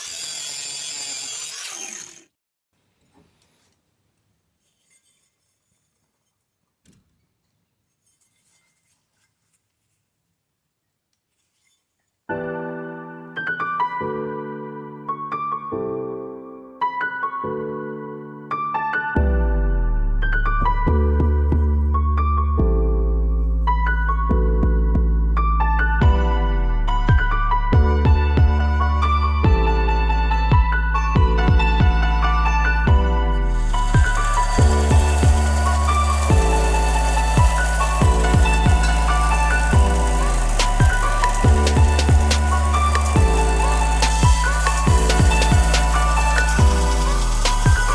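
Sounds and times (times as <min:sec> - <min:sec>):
piano music with held chords: 0:12.3 - 0:47.9
deep kick drum: 0:26.0 - 0:26.3, 0:27.1 - 0:28.6, 0:30.5 - 0:32.0, 0:34.0 - 0:35.4
high synth melody: 0:27.8 - 0:47.9.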